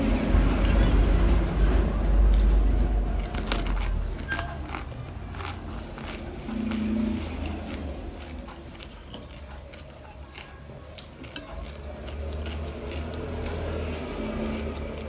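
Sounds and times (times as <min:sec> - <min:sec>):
low steady hum: 0:00.0 - 0:10.1
chewing crunchy snack: 0:02.3 - 0:15.0.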